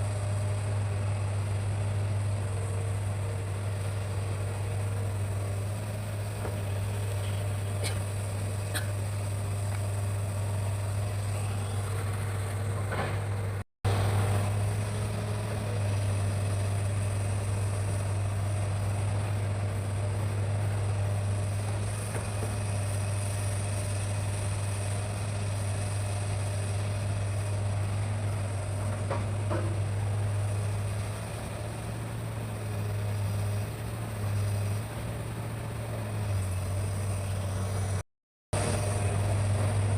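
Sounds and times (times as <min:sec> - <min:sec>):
excavator diesel engine drone: 0:00.0 - 0:38.0, 0:38.6 - 0:39.9.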